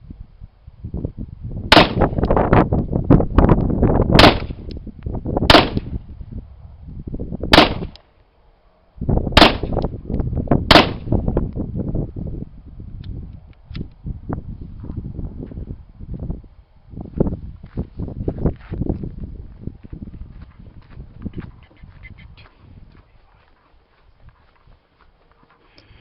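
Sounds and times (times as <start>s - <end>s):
gunshot cracks: 1.7s - 2.2s, 4.2s - 4.6s, 5.5s - 5.9s, 7.6s - 8.0s, 9.4s - 9.8s, 10.7s - 11.2s.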